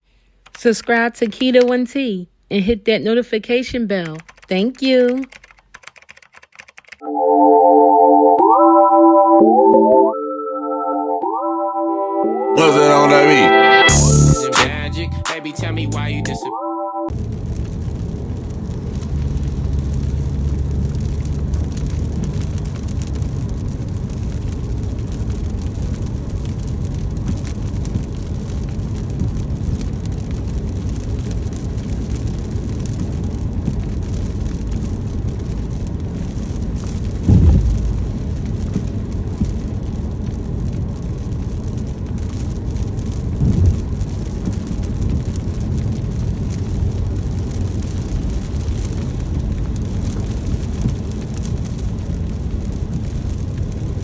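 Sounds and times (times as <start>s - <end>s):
car road rumble: 17.1s - 54.0s
rain and spray hiss: 17.1s - 54.0s
low thumps: 37.2s - 38.9s.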